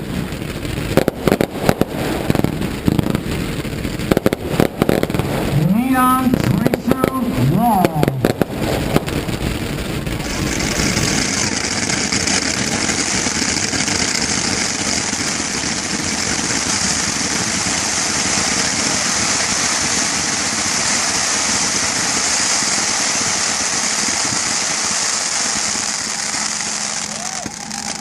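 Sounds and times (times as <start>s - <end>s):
firework hissing: 0.0s - 28.0s.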